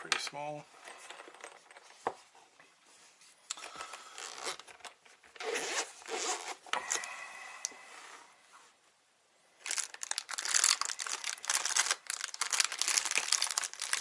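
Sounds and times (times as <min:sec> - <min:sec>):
zipper pulled open: 0:04.1 - 0:04.7, 0:05.3 - 0:07.1.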